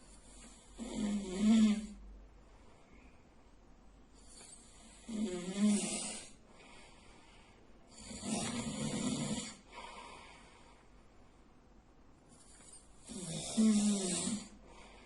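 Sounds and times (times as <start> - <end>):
man snoring: 0.0 - 2.0, 4.4 - 6.4, 7.9 - 9.8, 13.0 - 14.7
soft breath: 1.9 - 5.4, 6.0 - 11.5, 12.3 - 15.0.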